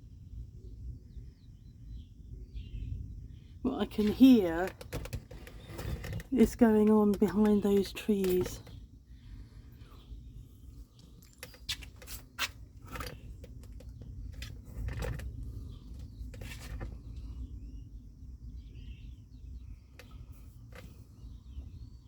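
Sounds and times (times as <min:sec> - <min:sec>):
faint bird chirps: 0:00.6 - 0:04.2
sharp clicks: 0:04.0 - 0:08.8
low steady rumble: 0:12.5 - 0:22.0.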